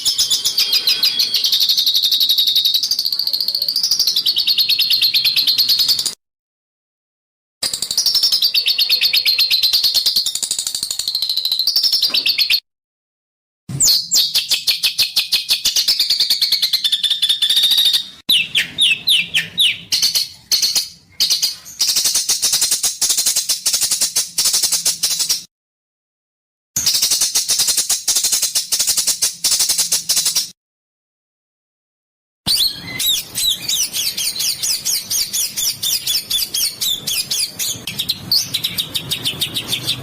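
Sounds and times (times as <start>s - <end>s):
songbirds rattling trills: 0.0s - 3.1s, 32.6s - 40.0s.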